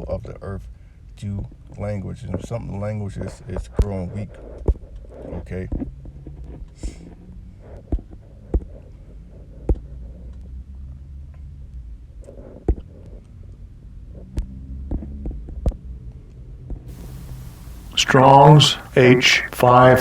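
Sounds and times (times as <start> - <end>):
steady low hum: 16.9 - 20.0.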